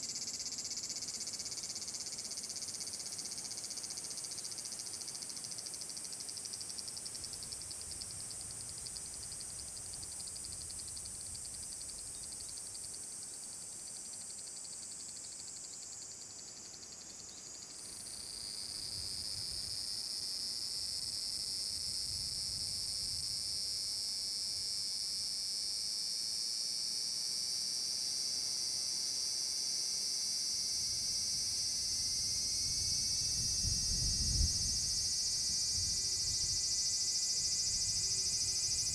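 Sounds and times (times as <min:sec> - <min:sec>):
cicadas droning: 0:00.0 - 0:38.9
loud cicada song rising in pitch: 0:30.5 - 0:38.9.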